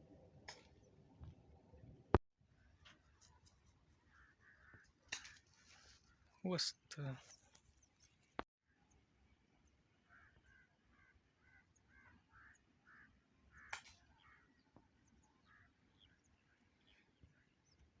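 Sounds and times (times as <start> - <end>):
faint bird calls: 2.5 - 6.4, 10.0 - 17.8.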